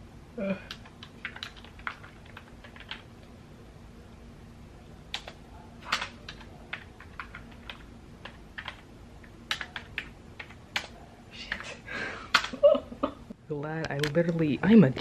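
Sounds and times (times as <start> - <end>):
typing on keyboard: 0.6 - 3.1, 5.1 - 8.8, 9.5 - 11.7, 12.3 - 12.6.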